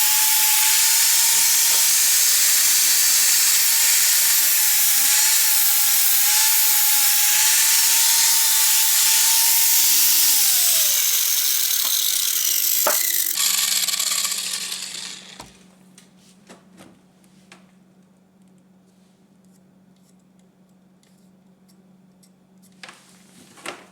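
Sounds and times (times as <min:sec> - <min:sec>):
sanding disc grinding metal: 0:00.0 - 0:15.6
electric drill motor: 0:00.0 - 0:15.7.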